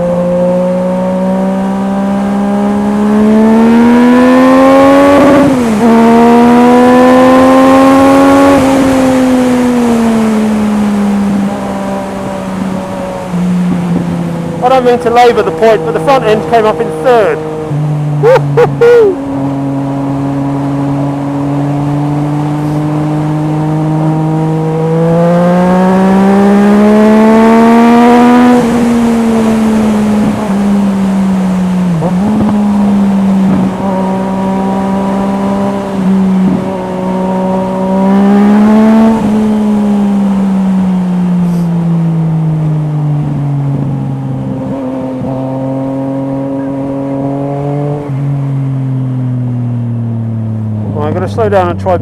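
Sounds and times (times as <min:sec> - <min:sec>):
motorcycle engine revving: 0:00.0 - 0:52.0.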